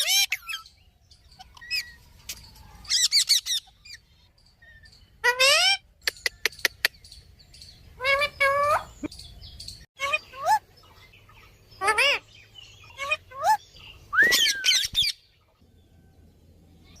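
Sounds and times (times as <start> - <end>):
parakeet whistled calls: 12.8 - 15.2.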